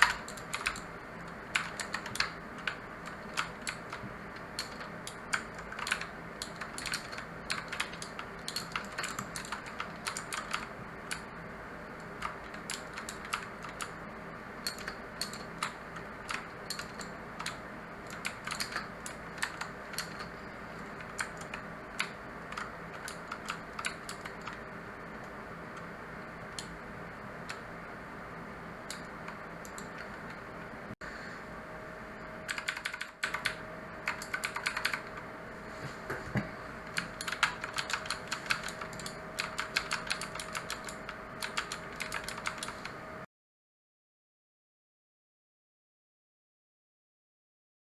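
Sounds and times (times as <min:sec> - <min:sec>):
typing on mechanical keyboard: 0:00.0 - 0:00.9, 0:01.5 - 0:11.2, 0:12.0 - 0:14.0, 0:14.6 - 0:24.6, 0:28.9 - 0:30.4, 0:32.5 - 0:35.2, 0:36.9 - 0:43.0.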